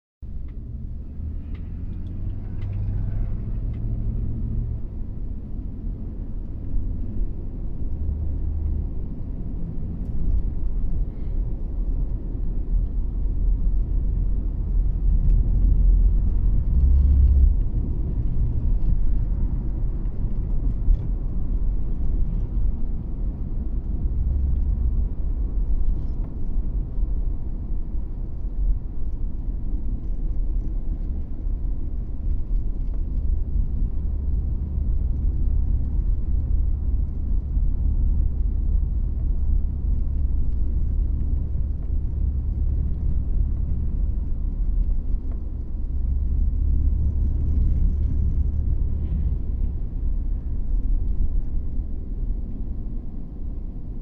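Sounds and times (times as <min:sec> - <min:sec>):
low rumble: 0:00.2 - 0:54.0.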